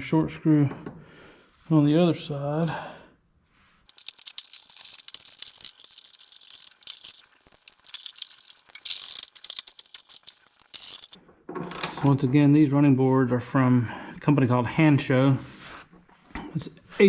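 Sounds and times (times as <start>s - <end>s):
hand tools and bolts clicking: 3.9s - 12.1s.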